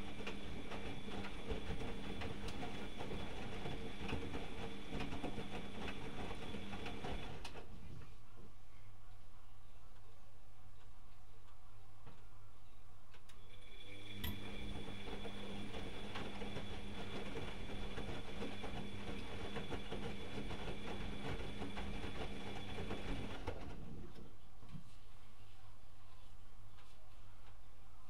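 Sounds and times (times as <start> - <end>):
washing machine drum motor whine: 0.0 - 7.7, 13.4 - 24.0.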